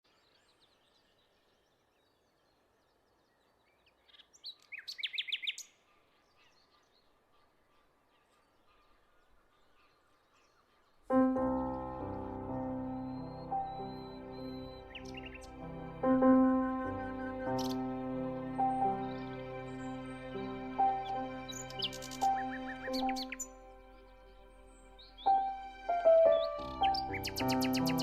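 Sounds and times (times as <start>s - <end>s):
faint outdoor ambience: 0.1s - 28.0s
background piano music: 11.1s - 28.0s
bird calling sweeping notes: 11.2s - 28.0s.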